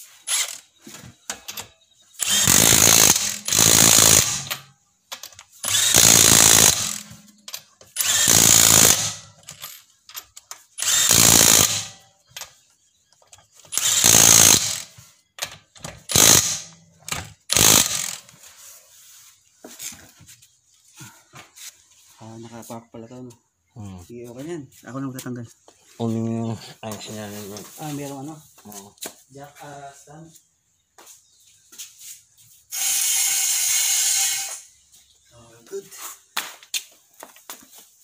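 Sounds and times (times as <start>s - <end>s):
power tool bursts: 0.0s - 0.7s, 1.3s - 9.8s, 10.8s - 12.5s, 13.7s - 15.1s, 15.9s - 18.4s, 32.7s - 34.8s.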